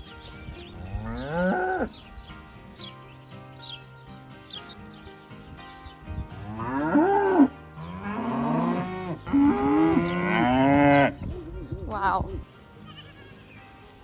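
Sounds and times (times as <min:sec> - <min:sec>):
cattle mooing: 0:06.5 - 0:11.2.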